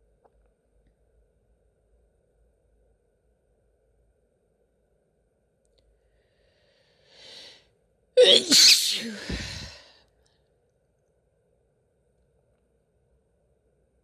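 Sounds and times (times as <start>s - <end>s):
woman breathing in: 6.3s - 7.6s, 9.0s - 9.9s
woman sneezing: 8.2s - 9.8s.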